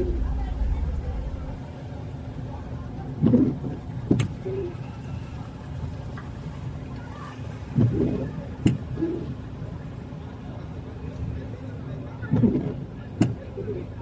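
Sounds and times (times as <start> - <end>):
low thump: 0.0 - 2.2
vehicle rumbling in motion: 0.0 - 14.0.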